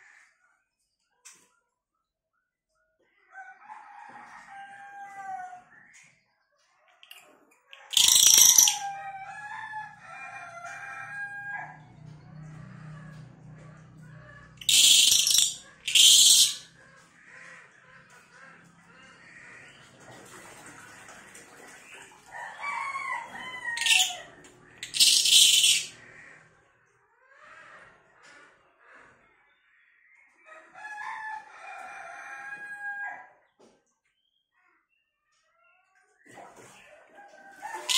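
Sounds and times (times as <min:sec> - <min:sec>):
harsh high-pitched songbird bursts: 0:07.9 - 0:08.8, 0:14.6 - 0:16.6, 0:23.8 - 0:24.1, 0:24.8 - 0:25.9
rooster crowing: 0:07.9 - 0:11.8, 0:14.6 - 0:16.6, 0:22.3 - 0:25.9, 0:30.8 - 0:33.3, 0:37.5 - 0:37.9.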